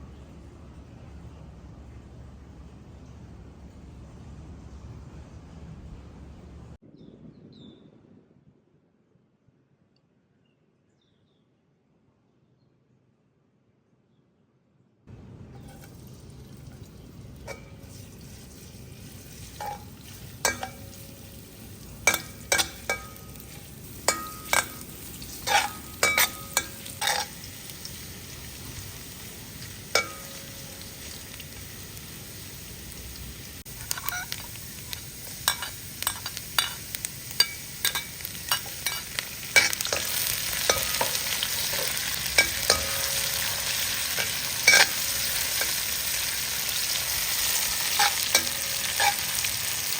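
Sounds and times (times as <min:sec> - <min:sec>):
oil sizzling in a pan: 0:15.6 - 0:49.9
utensil scraping a pan: 0:22.1 - 0:27.5, 0:35.2 - 0:45.8, 0:47.0 - 0:49.6.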